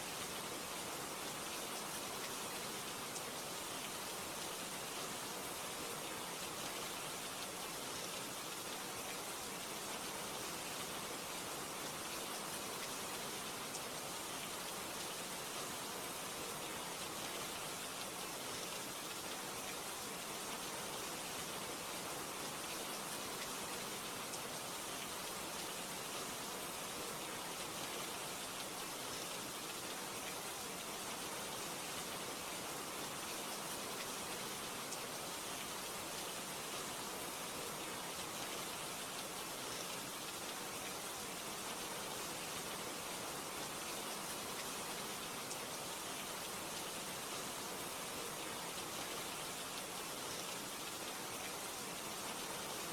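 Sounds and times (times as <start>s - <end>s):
steady rain: 0.0s - 52.9s.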